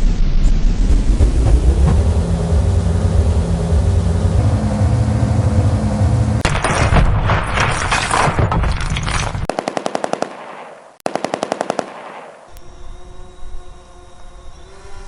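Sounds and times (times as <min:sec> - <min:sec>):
low engine drone: 0:00.0 - 0:06.4, 0:12.6 - 0:15.0
machine-gun fire: 0:06.4 - 0:08.5, 0:09.4 - 0:12.6.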